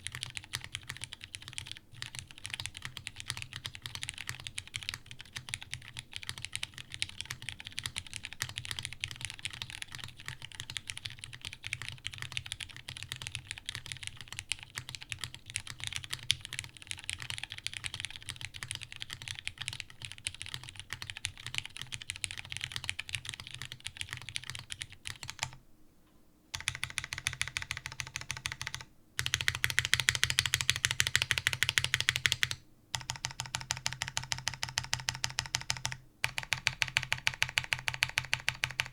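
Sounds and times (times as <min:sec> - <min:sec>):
keyboard typing: 0:00.0 - 0:25.6, 0:26.5 - 0:38.9
large keyboard keys pressed: 0:26.5 - 0:38.9.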